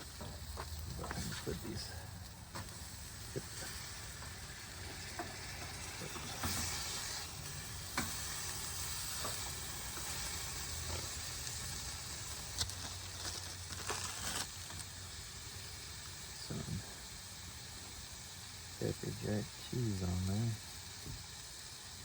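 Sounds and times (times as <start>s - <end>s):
patties sizzling on a grill: 0.0s - 22.0s.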